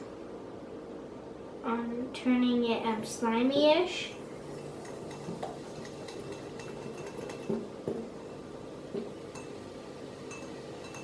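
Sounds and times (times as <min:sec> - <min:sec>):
spoon clinking on bowl: 0:05.1 - 0:07.5, 0:10.3 - 0:11.0.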